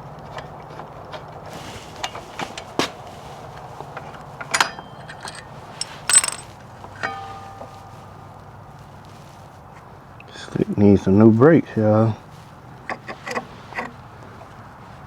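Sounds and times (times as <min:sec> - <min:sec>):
metal tools clinking: 0:04.5 - 0:08.0
struck metal ringing: 0:04.6 - 0:08.3.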